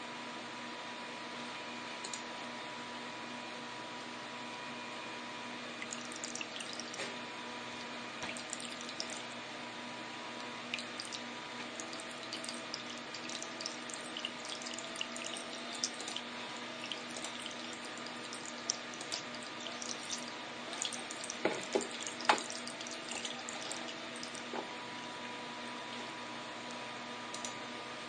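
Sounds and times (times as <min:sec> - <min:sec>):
faint hum: 0:00.0 - 0:28.0
water trickling and dripping: 0:05.8 - 0:07.0, 0:08.2 - 0:09.3, 0:10.7 - 0:24.5.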